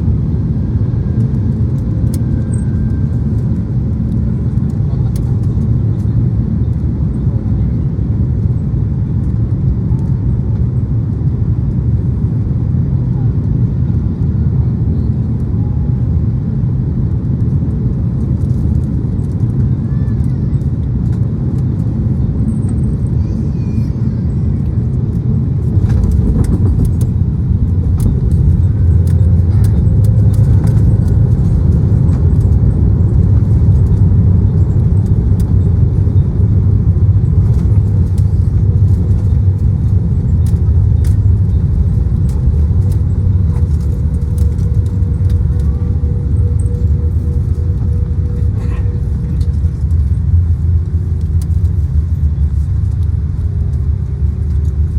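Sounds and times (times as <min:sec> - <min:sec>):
airplane landing rumble: 0:00.0 - 0:54.9
rattles and clicks: 0:25.6 - 0:35.8, 0:37.2 - 0:53.2.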